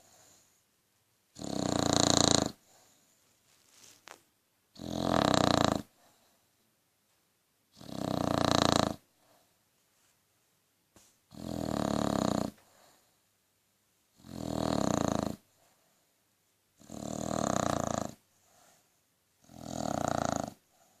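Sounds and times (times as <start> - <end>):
dog snoring: 1.3 - 3.0, 4.7 - 6.2, 7.7 - 9.1, 11.3 - 13.1, 14.1 - 15.6, 16.8 - 18.8, 19.4 - 21.0.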